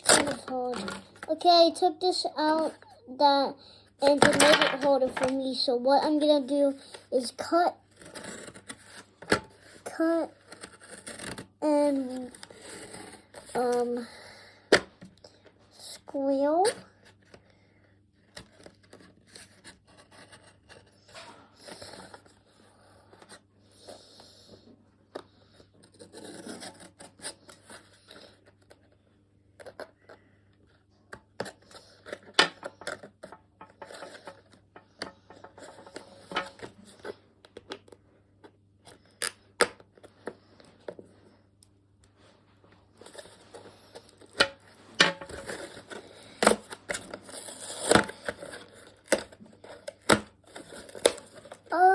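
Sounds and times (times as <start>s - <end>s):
cardboard and plastic rustling: 0.0s - 1.5s, 31.4s - 38.0s, 42.8s - 51.9s.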